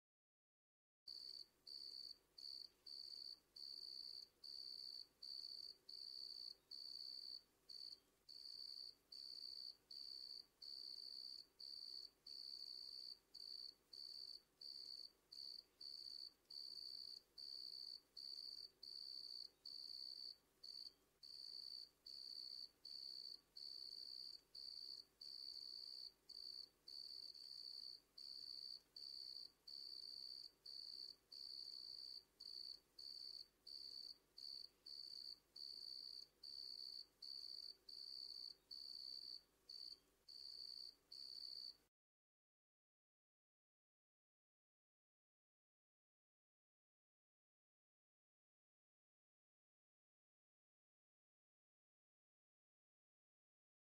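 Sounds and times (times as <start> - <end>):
cricket chirping: 1.1 - 41.8.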